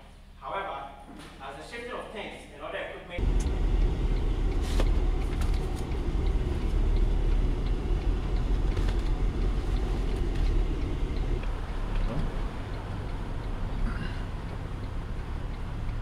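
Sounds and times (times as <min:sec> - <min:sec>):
engine low rumble: 0:03.2 - 0:16.0.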